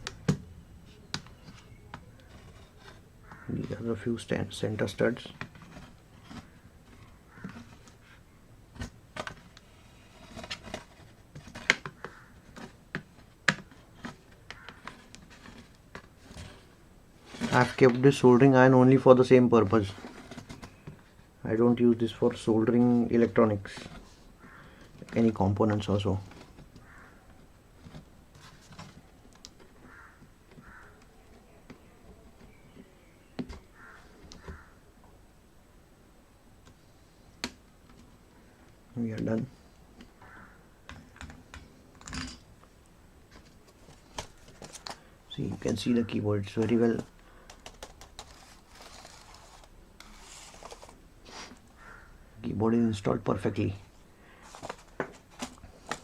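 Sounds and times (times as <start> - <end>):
clicks and taps on plastic keyboard: 47.0 - 48.4.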